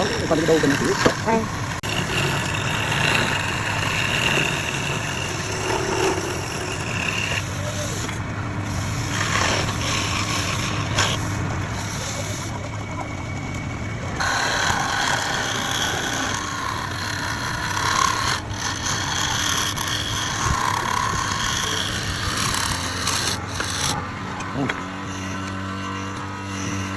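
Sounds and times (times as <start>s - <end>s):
lathe motor running: 0.0s - 26.9s
tool cutting spinning wood: 0.0s - 26.9s.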